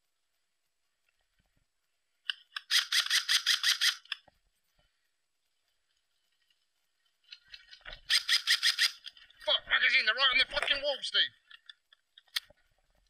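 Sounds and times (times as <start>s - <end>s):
electric rifle full-auto burst: 2.7s - 4.0s.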